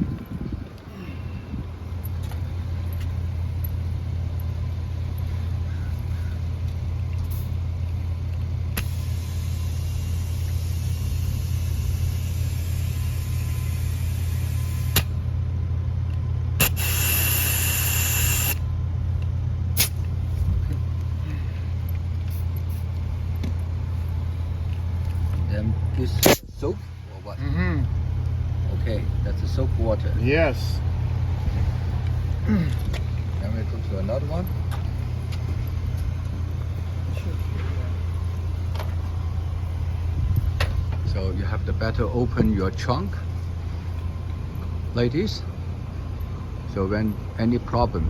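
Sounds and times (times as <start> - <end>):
vehicle engine idling: 0.0 - 48.0
air valve click: 8.7 - 15.2, 16.6 - 18.6, 19.8 - 20.1, 26.2 - 26.5
air hissing into a tire: 8.8 - 15.2, 16.6 - 18.6, 19.8 - 20.1.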